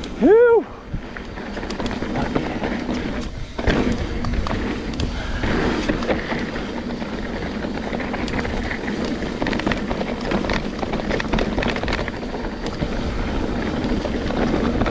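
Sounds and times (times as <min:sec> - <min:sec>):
wind rushing on microphone: 0:00.0 - 0:09.6
bike chain and frame rattling: 0:00.0 - 0:14.9
tyres on dirt: 0:00.0 - 0:14.9.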